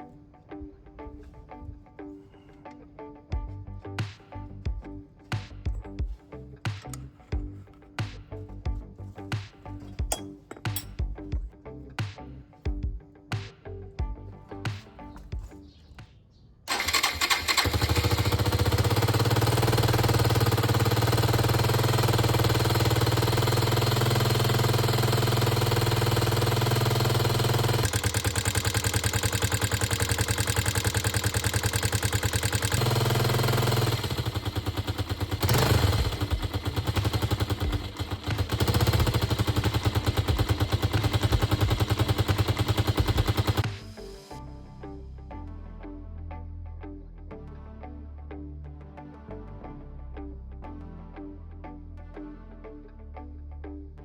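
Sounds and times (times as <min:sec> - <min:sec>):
motorcycle engine starting and idling: 0:09.7 - 0:11.2, 0:16.7 - 0:44.0
motorcycle engine revving: 0:16.7 - 0:43.8.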